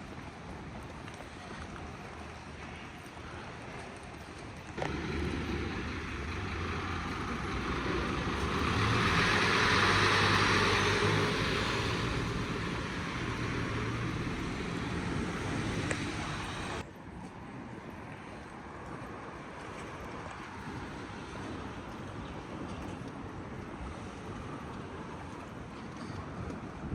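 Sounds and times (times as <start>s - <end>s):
low engine hum: 4.8s - 16.8s
vehicle passing by: 4.8s - 16.8s.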